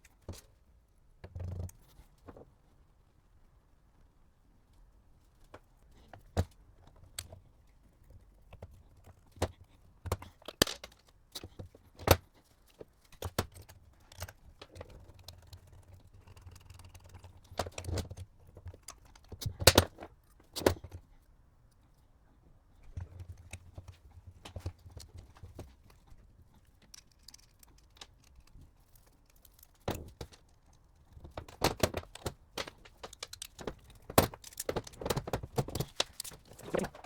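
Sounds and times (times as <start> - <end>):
metal tools clicking and knocking: 29.2 - 37.0.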